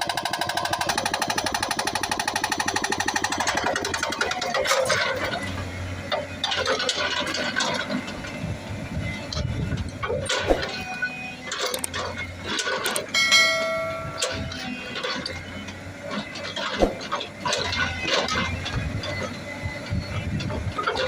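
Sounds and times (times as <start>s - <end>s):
heavy machinery engine rumble: 0.0s - 21.0s
metallic knocks and clanks: 11.5s - 19.2s
ringing metallic tone: 13.1s - 15.7s.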